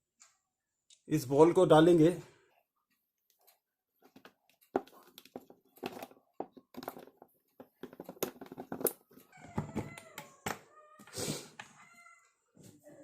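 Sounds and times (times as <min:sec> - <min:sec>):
clicks and knocks of drill parts: 0:03.3 - 0:10.6.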